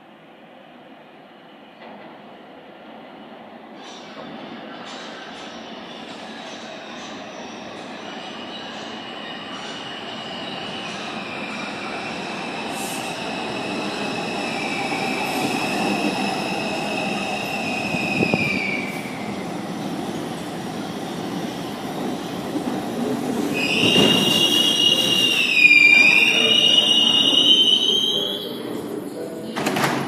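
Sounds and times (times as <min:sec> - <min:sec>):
train wheels squealing: 0:03.3 - 0:19.5, 0:23.3 - 0:29.4.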